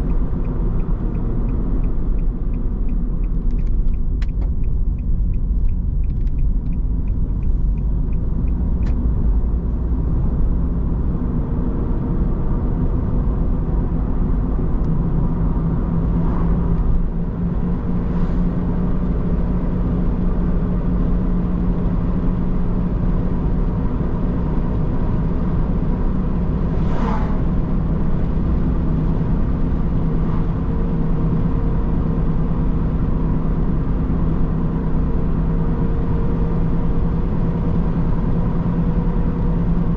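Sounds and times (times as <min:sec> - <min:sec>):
car engine and road rumble: 0:00.0 - 0:39.9.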